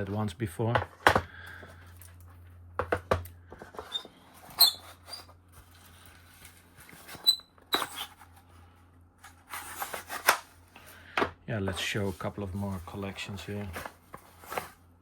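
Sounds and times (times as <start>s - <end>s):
low steady hum: 0.0s - 15.0s
wooden boxes knocking and clicking: 2.8s - 3.2s
short high squeaks: 3.9s - 5.3s.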